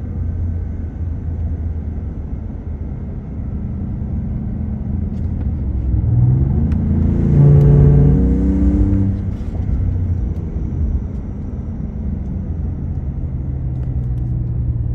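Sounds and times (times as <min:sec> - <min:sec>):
engine accelerating: 0:04.8 - 0:11.4.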